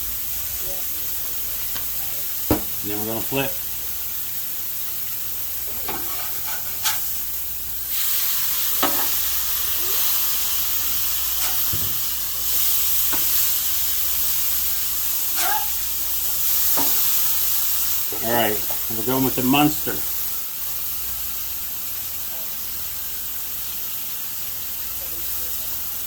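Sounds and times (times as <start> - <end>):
patties sizzling on griddle: 0.0 - 26.0
metal spatula scraping steel: 5.9 - 7.1.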